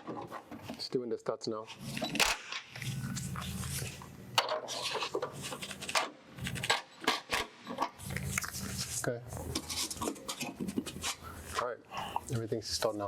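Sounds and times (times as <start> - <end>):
low steady hum: 7.5 - 13.0.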